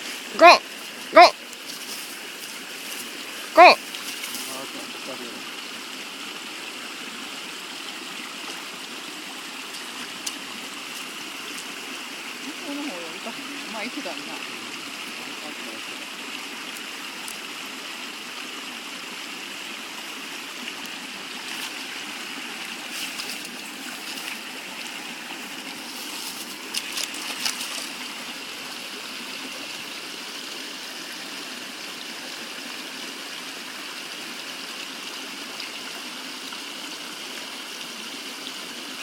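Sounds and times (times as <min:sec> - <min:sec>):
stream flowing over stones: 0:00.0 - 0:39.0
sharp water splashes: 0:20.9 - 0:28.6.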